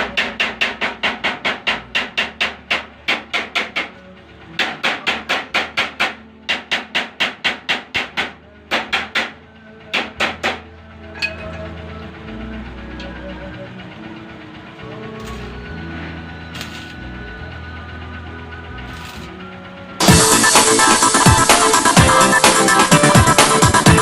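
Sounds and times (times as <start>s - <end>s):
hammer striking metal: 0.0s - 4.0s, 4.6s - 11.8s.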